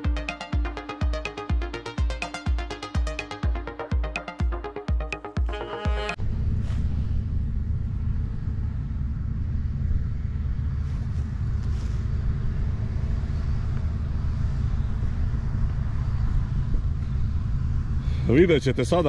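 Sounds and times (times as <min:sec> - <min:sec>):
diesel engine low rumble: 0:06.2 - 0:19.0.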